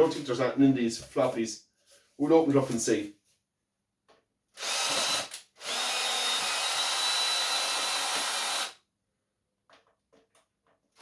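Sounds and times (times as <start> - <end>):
power drill whine: 4.6 - 8.8.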